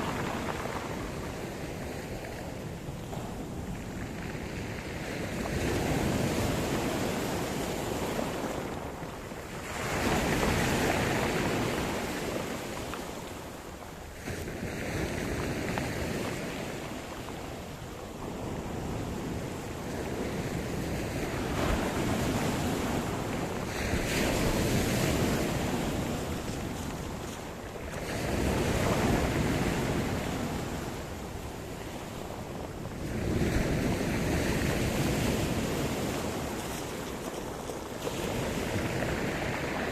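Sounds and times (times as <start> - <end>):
waves breaking on shore: 0.0 - 39.9.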